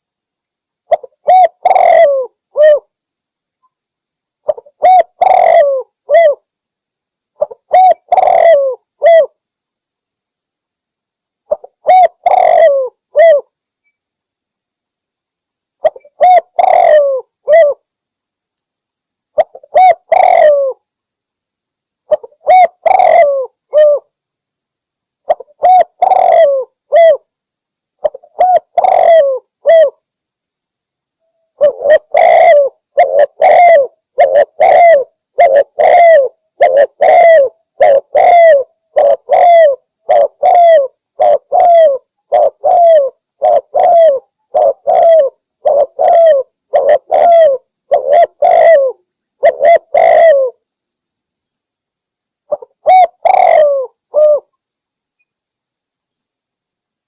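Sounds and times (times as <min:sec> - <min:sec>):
dove cooing: 0:00.9 - 0:02.9, 0:04.5 - 0:06.4, 0:07.4 - 0:09.4, 0:11.5 - 0:13.5, 0:15.8 - 0:17.8, 0:19.4 - 0:20.8, 0:22.1 - 0:24.1, 0:25.3 - 0:27.2, 0:28.0 - 0:30.0, 0:31.6 - 0:50.6, 0:52.5 - 0:54.5.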